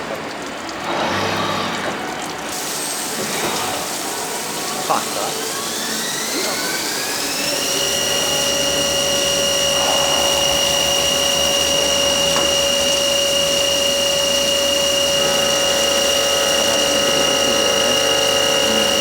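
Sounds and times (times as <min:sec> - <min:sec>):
spindle motor high whine: 0:00.9 - 0:19.0.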